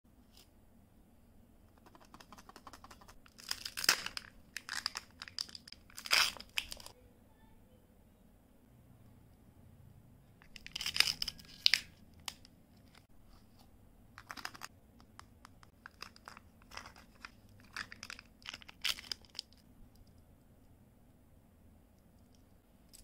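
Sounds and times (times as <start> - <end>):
candy wrappers crinkling: 3.0 - 6.9, 10.4 - 12.4, 15.7 - 19.6.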